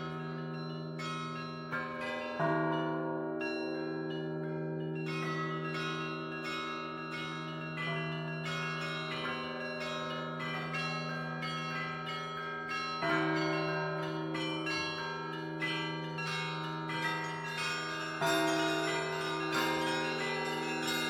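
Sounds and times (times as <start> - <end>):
small high-pitched bells ringing: 0.0 - 21.0
large bell humming: 7.2 - 21.0.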